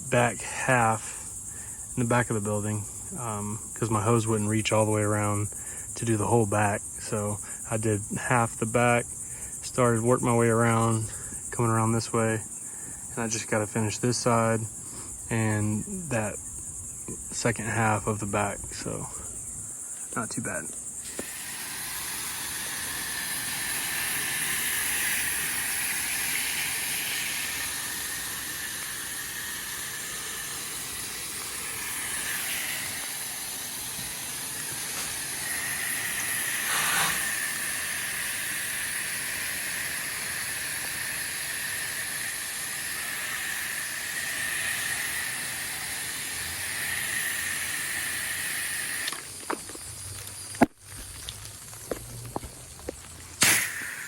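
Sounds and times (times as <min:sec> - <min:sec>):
pressure washer water jet spraying: 0:21.0 - 0:49.2, 0:53.4 - 0:54.0.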